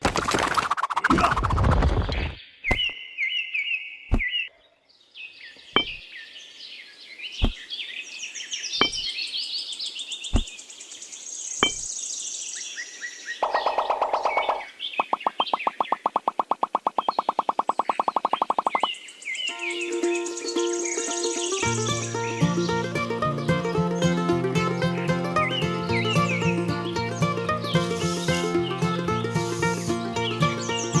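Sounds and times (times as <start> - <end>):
birds chirping: 17.1 - 31.0.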